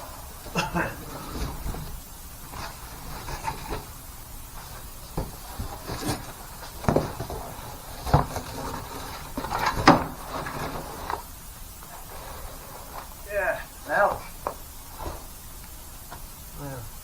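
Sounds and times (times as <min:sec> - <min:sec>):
soft rustling: 0:00.0 - 0:16.5
knocks and clunks of objects: 0:00.4 - 0:12.1.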